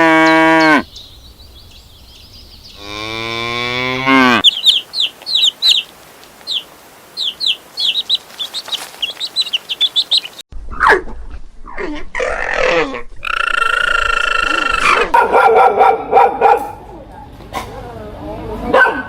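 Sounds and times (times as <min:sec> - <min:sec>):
chicks peeping: 0:04.4 - 0:10.4.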